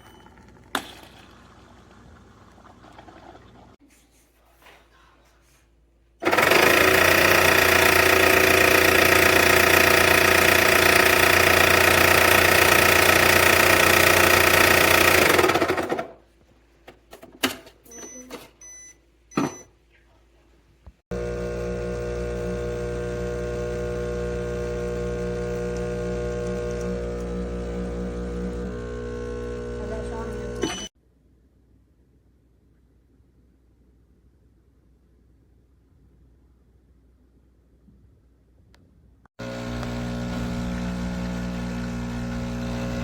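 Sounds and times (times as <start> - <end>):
espresso machine motor running: 6.2 - 15.8, 21.1 - 30.9, 39.4 - 43.0.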